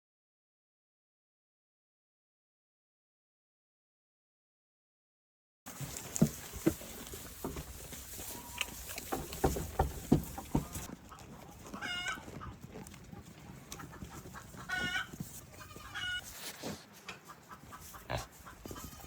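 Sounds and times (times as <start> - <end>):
farm animal calling: 5.8 - 19.0
knocks and thumps: 9.1 - 10.9.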